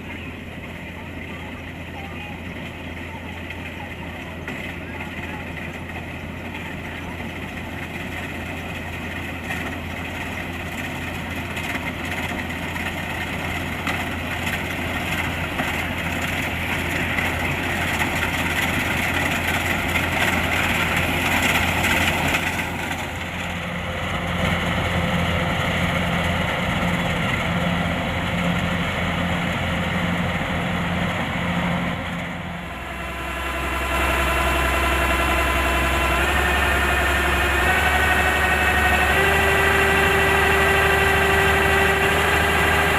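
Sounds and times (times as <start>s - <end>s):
combine harvester engine running: 0.0s - 42.9s
steady whine rising in pitch: 29.9s - 42.9s.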